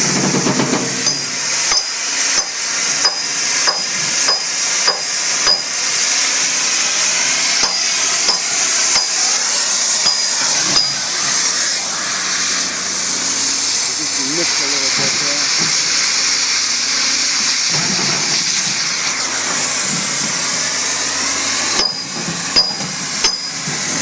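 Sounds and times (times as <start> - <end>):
hammer striking steel: 0.0 - 5.8, 7.6 - 11.2, 21.7 - 23.8
gas flame hissing: 0.0 - 24.0.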